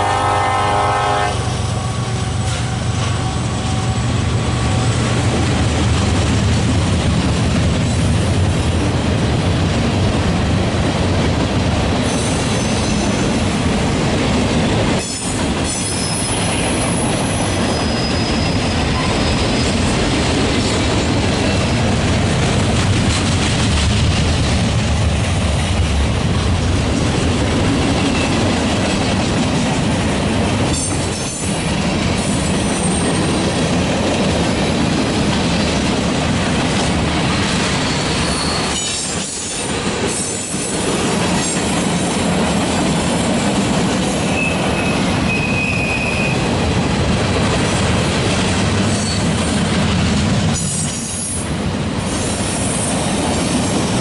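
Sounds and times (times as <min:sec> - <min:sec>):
freight train rumbling and clattering: 0:00.0 - 0:54.0
wheel flanges squealing: 0:15.1 - 0:19.7, 0:37.8 - 0:39.4.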